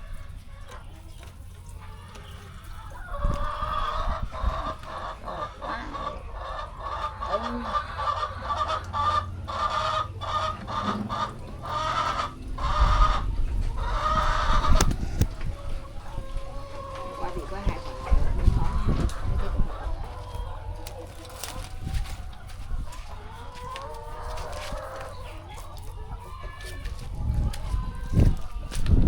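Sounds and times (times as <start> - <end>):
hens clucking: 0.0 - 29.0.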